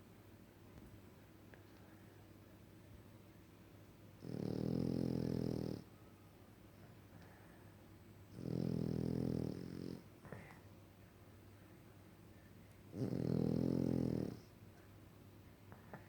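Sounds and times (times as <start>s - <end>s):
dog snoring: 4.2s - 5.9s, 8.3s - 10.1s, 12.9s - 14.5s.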